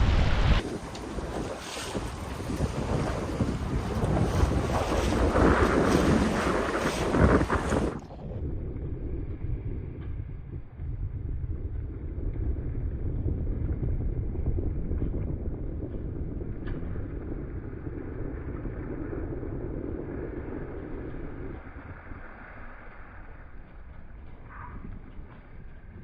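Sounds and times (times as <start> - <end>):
water rushing past boat: 0.0 - 8.8
wind buffeting microphone: 0.0 - 26.0.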